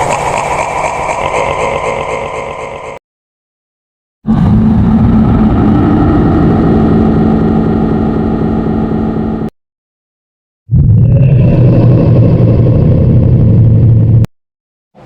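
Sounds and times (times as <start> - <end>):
engine rumble sound effect: 0.0 - 3.0, 4.3 - 9.5, 10.7 - 14.3.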